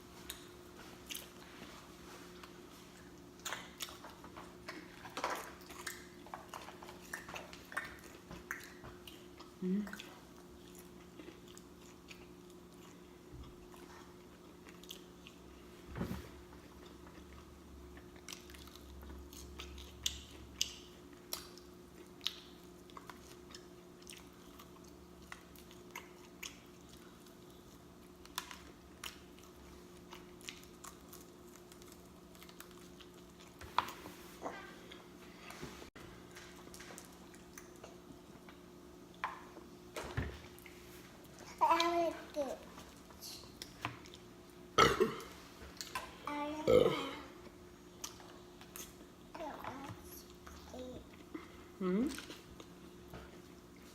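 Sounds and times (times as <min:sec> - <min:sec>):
person chewing and smacking: 0:00.2 - 0:01.5, 0:02.3 - 0:15.5, 0:16.6 - 0:34.0, 0:36.3 - 0:39.7, 0:42.9 - 0:44.6, 0:47.9 - 0:49.1.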